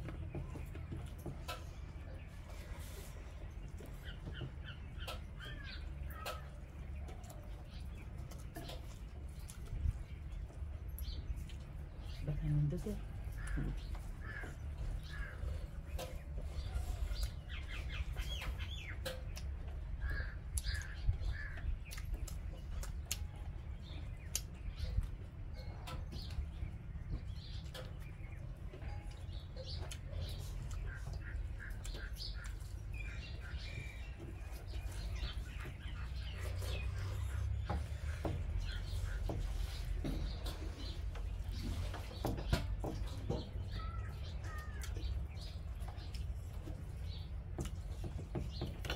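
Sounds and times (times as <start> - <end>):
small birds chirping: 0.0 - 48.9
crows cawing: 13.3 - 15.6.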